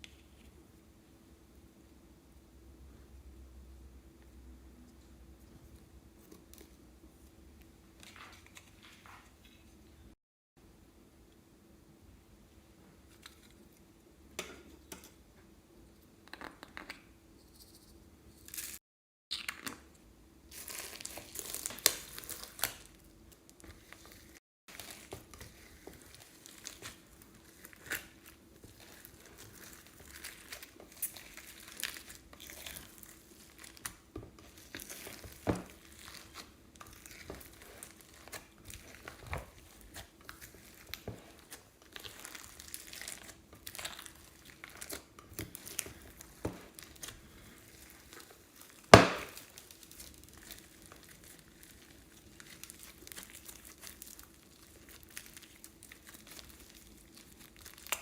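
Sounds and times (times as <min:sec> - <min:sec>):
faint steady hum: 0:00.0 - 0:18.6
plastic bags crinkling: 0:20.5 - 0:58.0.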